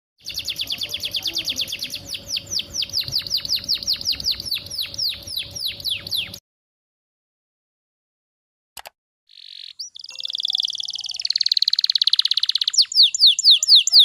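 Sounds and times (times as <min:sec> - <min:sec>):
canary singing: 0:00.2 - 0:06.4, 0:09.3 - 0:14.0.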